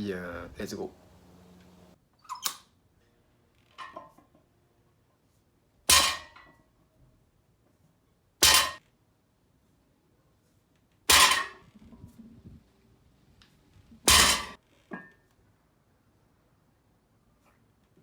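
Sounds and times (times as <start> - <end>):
barbell clanging on floor: 5.9 - 6.5, 8.4 - 8.8, 11.1 - 11.7, 14.0 - 15.1.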